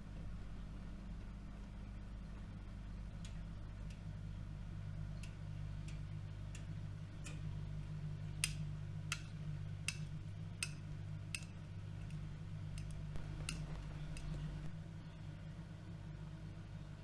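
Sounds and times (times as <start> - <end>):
washing machine humming: 0.0 - 17.0
light sharp clicks: 4.9 - 14.8.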